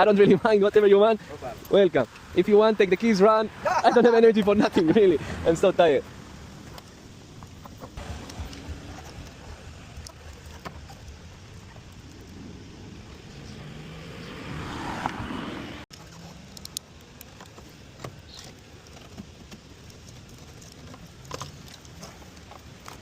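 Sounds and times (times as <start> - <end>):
road traffic rumble: 0.0 - 23.0
vehicle passing: 12.1 - 15.9.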